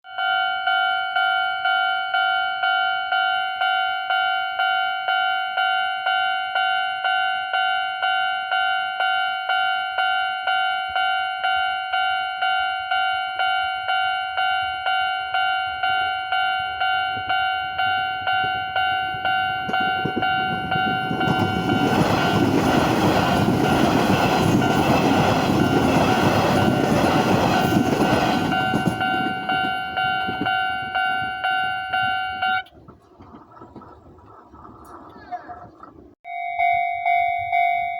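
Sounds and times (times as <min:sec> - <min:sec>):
level crossing electronic bell: 0:00.1 - 0:22.0, 0:28.4 - 0:32.6, 0:36.3 - 0:37.9
train rumbling past: 0:16.8 - 0:36.2.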